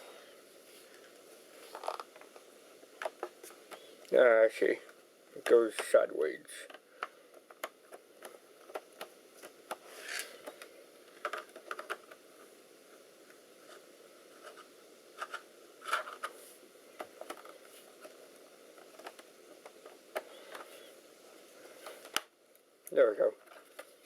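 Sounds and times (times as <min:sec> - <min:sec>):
small plastic parts clicking: 0:06.6 - 0:12.2.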